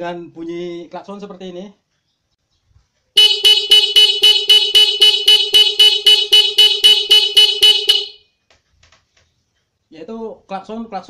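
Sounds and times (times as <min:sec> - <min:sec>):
motorcycle horn rapid beeps: 0:03.2 - 0:08.4.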